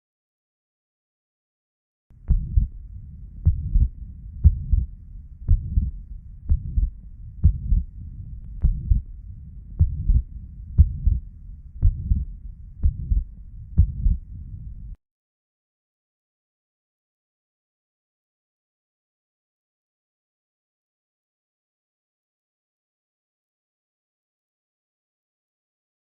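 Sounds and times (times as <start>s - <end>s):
steady low rumble: 2.1s - 15.0s
heartbeat thuds: 2.2s - 14.3s.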